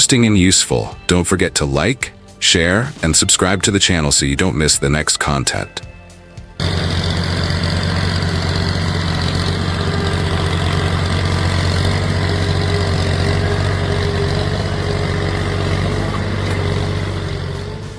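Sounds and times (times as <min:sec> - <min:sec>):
heavy machinery engine idling: 0:06.6 - 0:17.9.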